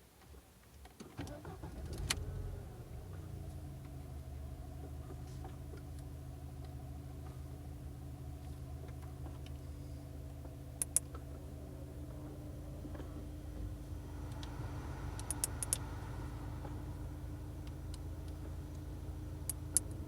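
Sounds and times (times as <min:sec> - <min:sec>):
car engine idling: 0:01.3 - 0:20.0
sharp clicks: 0:10.8 - 0:11.3, 0:15.2 - 0:15.9.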